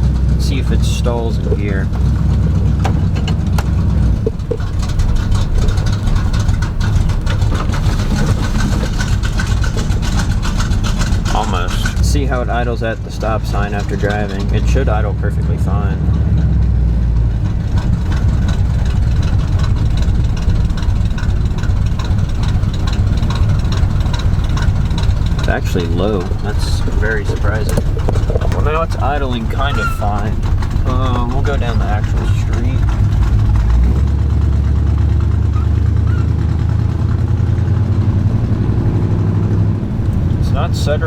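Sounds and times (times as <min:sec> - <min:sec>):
truck engine lumpy idle: 0:00.0 - 0:41.0.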